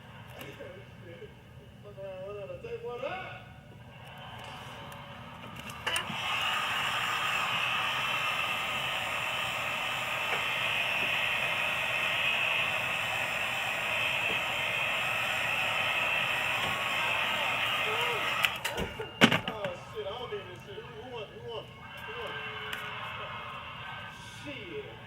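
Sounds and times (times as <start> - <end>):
steady hiss: 6.0 - 18.6.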